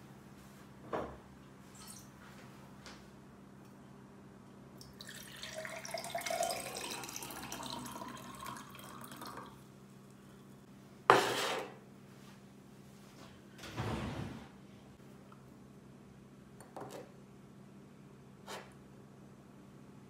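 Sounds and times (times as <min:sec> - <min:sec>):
water pouring into a container: 0:04.8 - 0:09.6.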